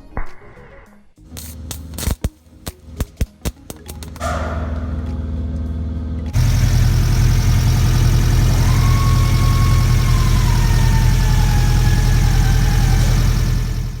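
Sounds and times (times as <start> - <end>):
car engine idling: 4.2 - 14.0
faint whine falling in pitch: 6.4 - 14.0.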